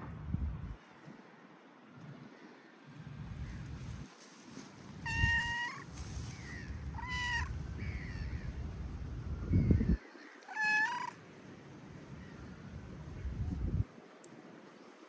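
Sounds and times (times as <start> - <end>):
wind rumble on microphone: 0.0 - 1.2, 3.0 - 10.2, 11.9 - 14.2
cat meowing: 5.1 - 5.8, 10.5 - 11.2.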